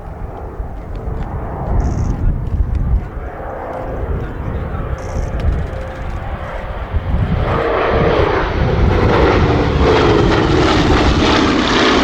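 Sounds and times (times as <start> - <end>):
twin piston engine aircraft passing: 0.0 - 12.0.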